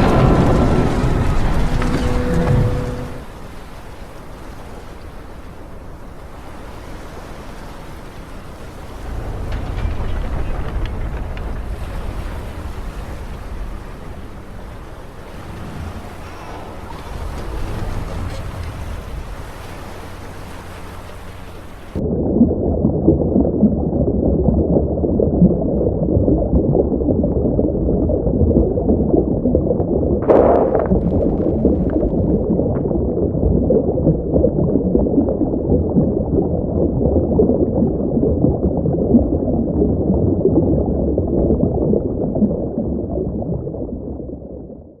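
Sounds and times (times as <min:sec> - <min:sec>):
waves: 0:00.0 - 0:22.0, 0:30.2 - 0:33.1
wind: 0:00.0 - 0:23.5, 0:30.2 - 0:44.9
muffled rumble of gurgling water: 0:00.0 - 0:45.0.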